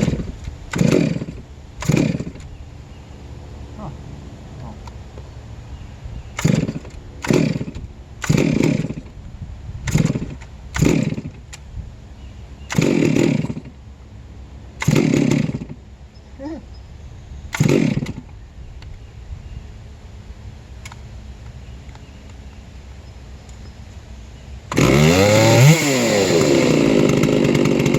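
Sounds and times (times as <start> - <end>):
chainsaw revving: 0.0 - 2.6, 6.4 - 9.2, 9.8 - 11.5, 12.6 - 13.8, 14.8 - 15.8, 17.5 - 18.3, 24.6 - 27.9.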